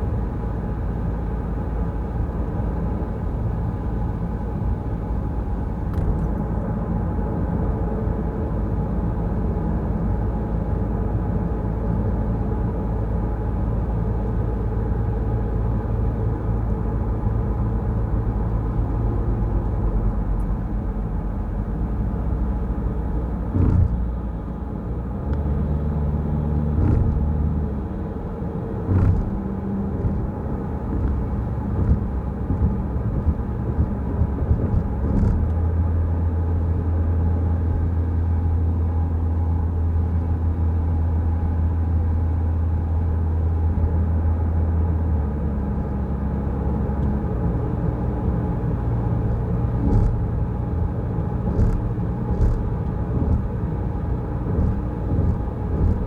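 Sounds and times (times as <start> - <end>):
car engine and road rumble: 0.0 - 56.0
wheels thumping over bumps: 23.6 - 24.1, 26.7 - 27.4, 28.8 - 35.7, 49.3 - 56.0.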